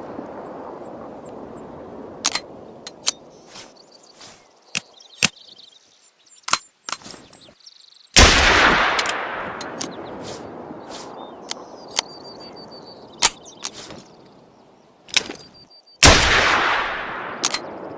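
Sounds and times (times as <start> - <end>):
pistol shot echoing: 8.2 - 10.0, 16.0 - 17.9
metallic gun handling clicks: 9.0 - 10.0, 17.4 - 17.7.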